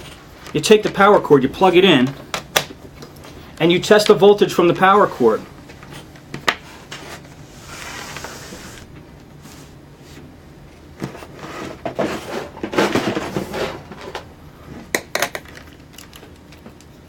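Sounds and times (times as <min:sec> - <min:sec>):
objects clattering and knocking: 0:11.0 - 0:16.8.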